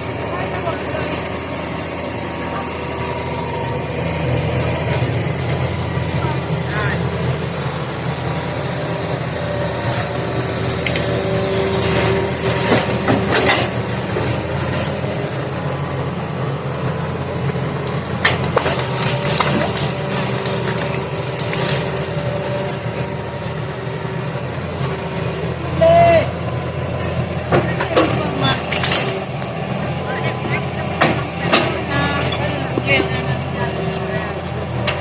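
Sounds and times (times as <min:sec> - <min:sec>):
excavator engine running: 0:00.0 - 0:35.0
clanks and knocks: 0:12.6 - 0:13.8.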